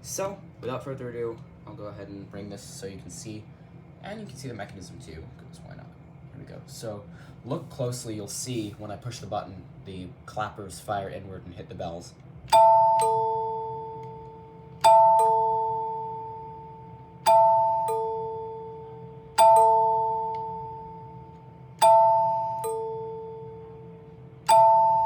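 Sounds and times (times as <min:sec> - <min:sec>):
door chime two-note chord: 0:12.5 - 0:25.0.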